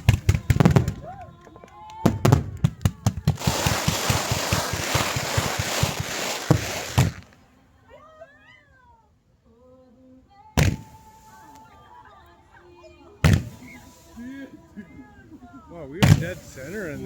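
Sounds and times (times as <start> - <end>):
firework bangs: 0.0 - 1.4, 2.0 - 7.4, 10.6 - 11.6, 13.2 - 17.0
fireworks crackling: 0.0 - 7.6, 10.6 - 12.0, 13.2 - 17.0
steady hiss: 3.1 - 7.5, 10.6 - 12.0, 13.2 - 17.0.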